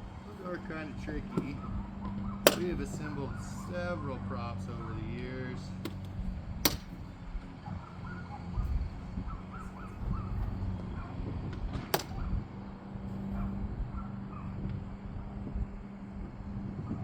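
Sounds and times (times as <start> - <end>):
sharp click: 2.5 - 2.9, 6.7 - 7.0, 12.0 - 12.3.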